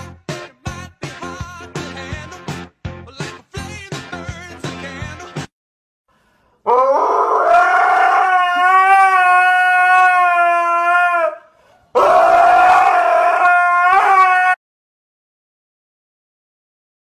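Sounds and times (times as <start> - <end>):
dog howling: 6.7 - 14.6.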